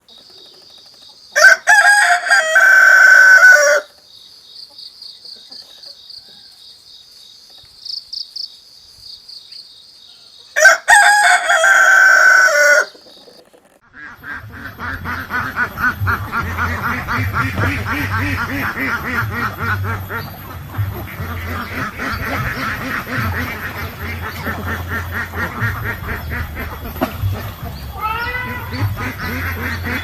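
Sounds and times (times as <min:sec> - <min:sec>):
rooster crowing: 0:01.4 - 0:04.0, 0:05.5 - 0:06.7, 0:10.6 - 0:13.0
ducks quacking: 0:12.4 - 0:30.0.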